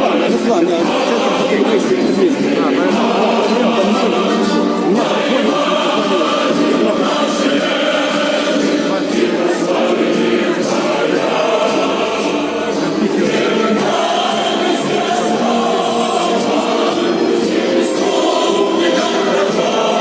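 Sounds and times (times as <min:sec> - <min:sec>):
group singing in chorus: 0:00.0 - 0:20.0.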